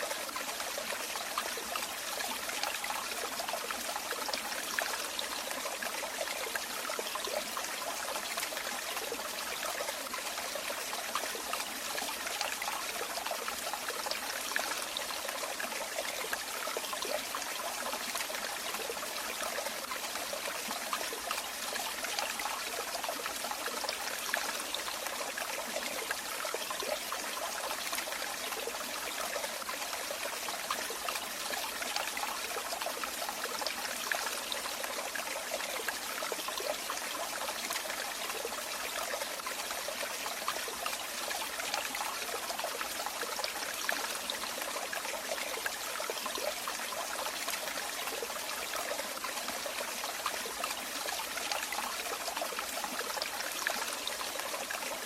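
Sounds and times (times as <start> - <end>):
stream trickling and splashing: 0.0 - 55.0.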